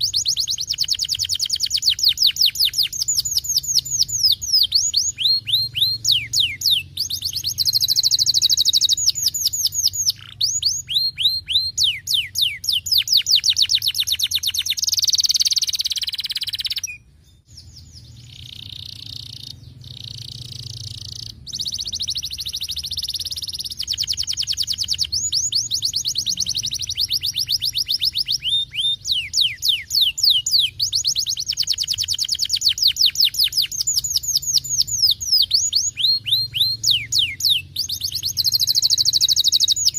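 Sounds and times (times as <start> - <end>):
canary singing trills: 0.0 - 39.9.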